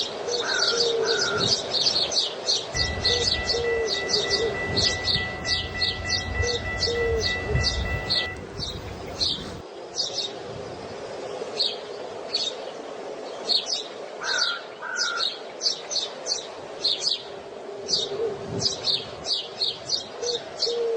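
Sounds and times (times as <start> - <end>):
two-note whistled bird call: 2.8 - 9.6.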